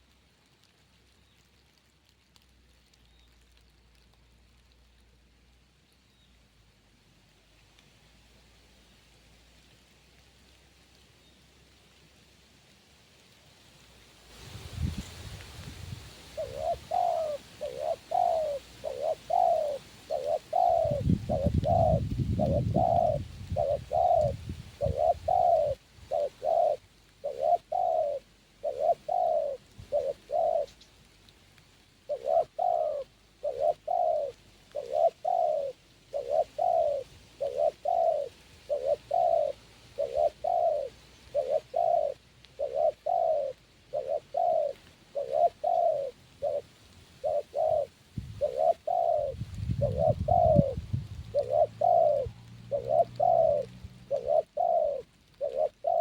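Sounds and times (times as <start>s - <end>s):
dove cooing: 14.5s - 30.9s, 32.0s - 56.0s.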